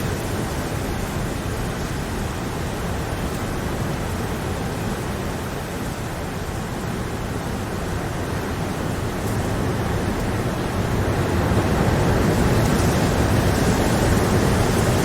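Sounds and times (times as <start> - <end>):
rain falling steadily: 0.0 - 15.0.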